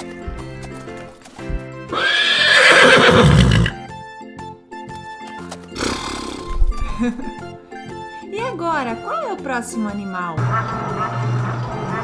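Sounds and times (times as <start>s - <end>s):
light background music: 0.0s - 12.0s
horse neighing: 1.9s - 3.8s, 5.8s - 6.8s.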